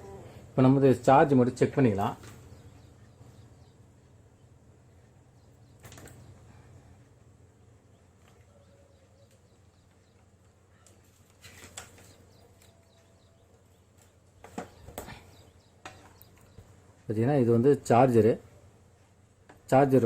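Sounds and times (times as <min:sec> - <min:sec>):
faint low hum: 0:00.0 - 0:20.0.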